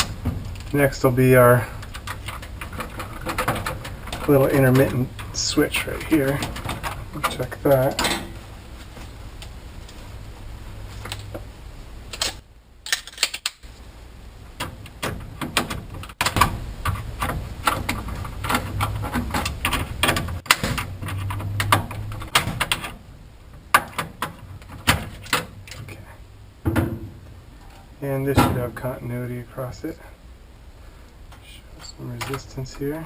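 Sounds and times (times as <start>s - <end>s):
hands clicking and rattling parts: 0.0s - 10.0s, 10.9s - 11.5s, 12.1s - 13.7s, 14.5s - 26.1s, 31.3s - 33.0s
steady low hum: 0.0s - 12.9s, 13.6s - 33.0s.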